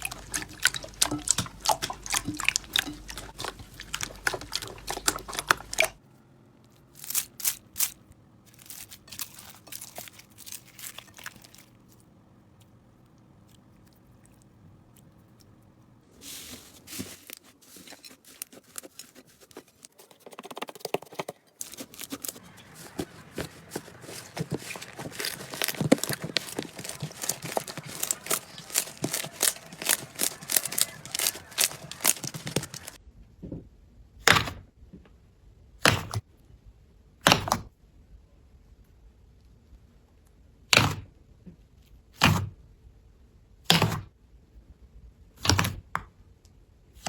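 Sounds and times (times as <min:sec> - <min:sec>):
slime squishes: 0:00.0 - 0:06.0, 0:06.8 - 0:33.0.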